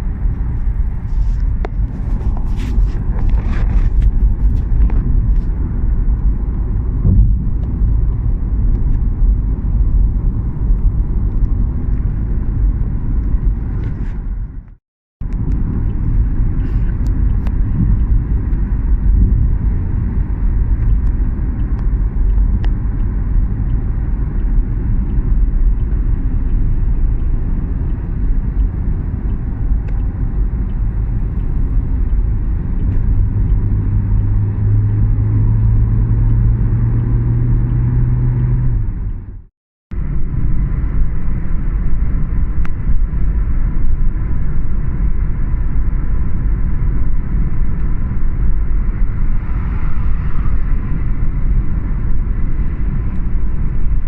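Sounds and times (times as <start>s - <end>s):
road traffic rumble: 0.0s - 54.0s
vehicle engine hum: 0.0s - 54.0s.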